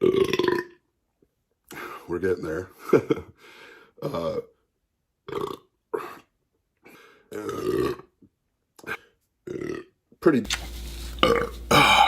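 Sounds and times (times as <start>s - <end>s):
man burping: 0.0s - 0.8s, 4.0s - 4.6s, 5.3s - 6.3s, 7.3s - 8.1s, 9.4s - 9.9s, 11.2s - 12.0s.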